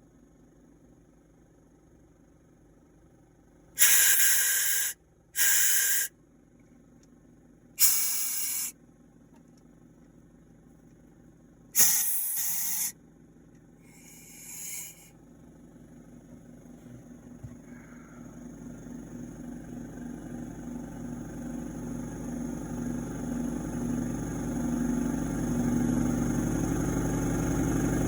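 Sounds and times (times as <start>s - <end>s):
faint low hum: 0.0s - 26.2s
hissing bursts: 3.8s - 6.1s, 7.8s - 8.7s, 11.8s - 12.9s, 14.0s - 15.1s.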